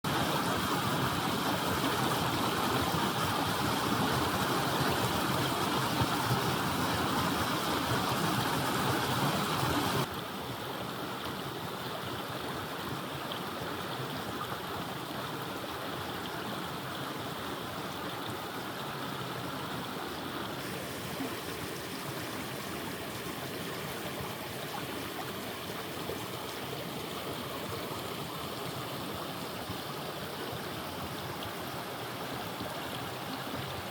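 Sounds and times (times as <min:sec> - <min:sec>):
waterfall rushing: 0:00.3 - 0:10.1, 0:20.5 - 0:31.2.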